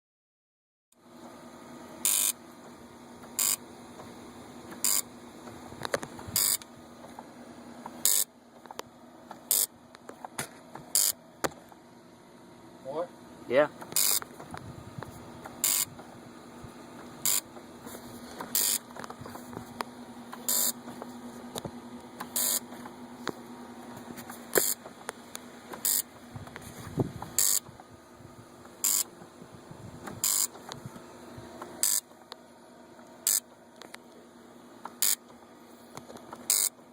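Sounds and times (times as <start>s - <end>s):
steady low hum: 1.0s - 36.9s
short buzzes: 2.0s - 2.4s, 3.3s - 3.6s, 4.8s - 5.1s, 6.3s - 6.7s, 8.0s - 8.3s, 9.5s - 9.8s, 10.9s - 11.2s, 13.8s - 14.3s, 15.4s - 16.0s, 17.2s - 17.5s, 18.4s - 18.9s, 20.3s - 20.9s, 22.2s - 22.8s, 27.3s - 27.7s, 28.8s - 29.1s, 30.1s - 31.0s, 31.6s - 32.1s, 33.2s - 33.6s, 35.0s - 35.3s, 36.4s - 36.8s.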